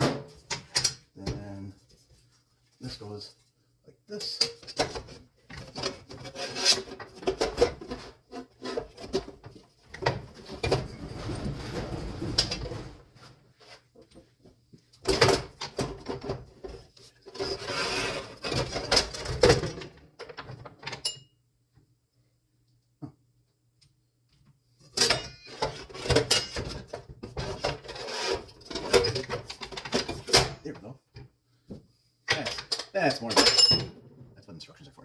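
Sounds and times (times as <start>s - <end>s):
rustling and scraping: 4.8s - 15.1s, 15.8s - 19.4s, 25.5s - 30.3s.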